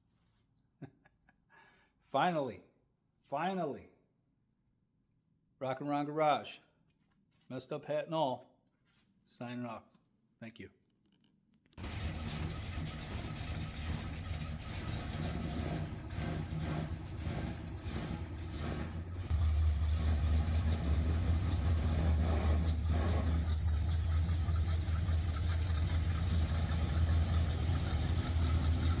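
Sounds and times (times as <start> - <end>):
vehicle engine running: 11.8 - 29.0.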